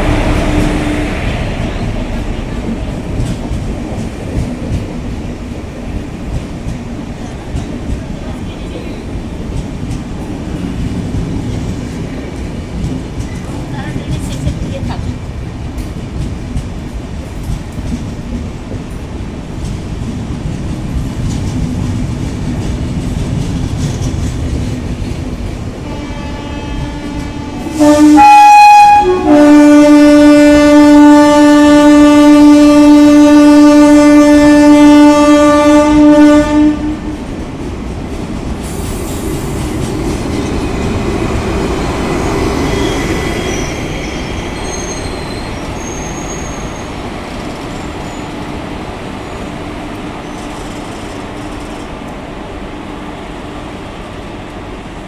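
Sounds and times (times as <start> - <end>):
train wheels clattering on track: 0.0 - 28.2, 29.2 - 55.0
locomotive horn blasts: 25.8 - 37.2.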